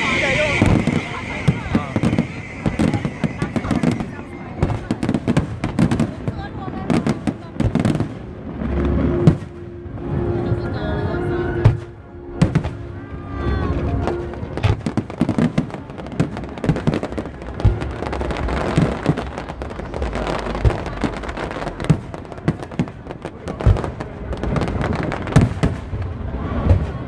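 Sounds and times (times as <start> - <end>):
fireworks bangs and crackling: 0.0 - 10.6, 11.4 - 27.0
steady rumble: 0.0 - 16.6.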